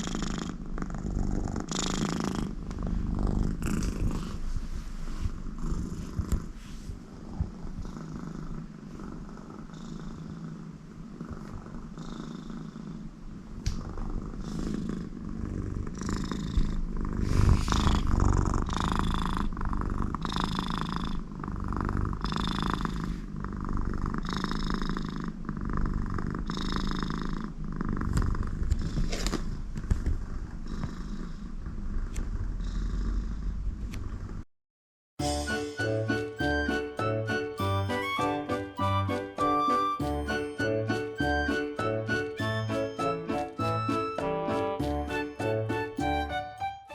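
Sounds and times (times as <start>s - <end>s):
cat nasal snoring: 0.0s - 34.4s
cat purring: 0.0s - 34.5s.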